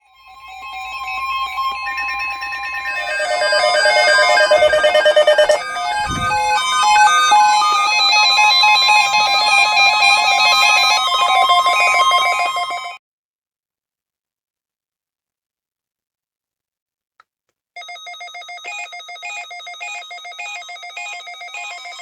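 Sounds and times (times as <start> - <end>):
steady high tone: 0.4 - 12.9
rapid repeating synth notes: 1.7 - 12.4.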